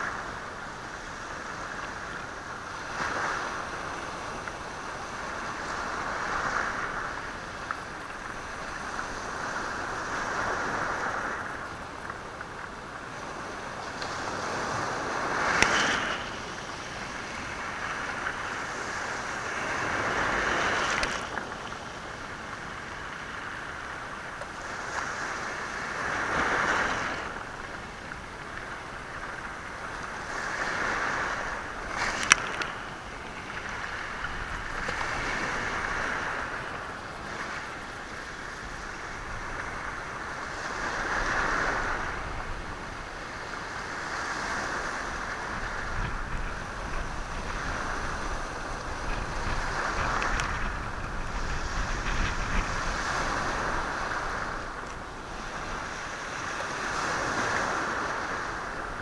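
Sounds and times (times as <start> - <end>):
waves on rocky shore: 0.0 - 59.0.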